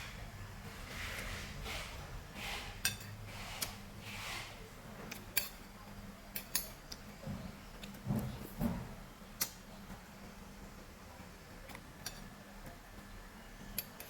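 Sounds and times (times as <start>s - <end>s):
cutlery clicking against dish: 2.8s - 3.8s, 5.1s - 5.7s, 6.3s - 7.0s, 11.7s - 12.3s.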